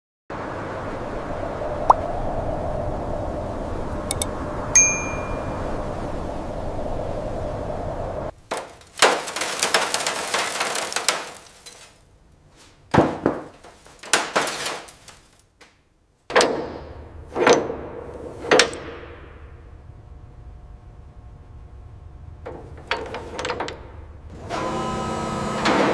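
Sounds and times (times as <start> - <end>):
sharp ringing strikes: 4.0 - 5.8.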